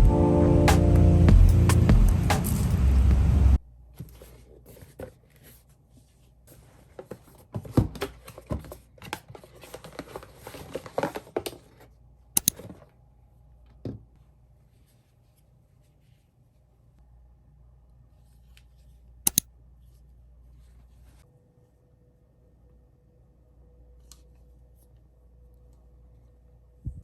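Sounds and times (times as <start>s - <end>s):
rustling and crinkling: 3.9s - 12.0s, 18.1s - 21.3s
faint steady hum: 11.8s - 27.0s.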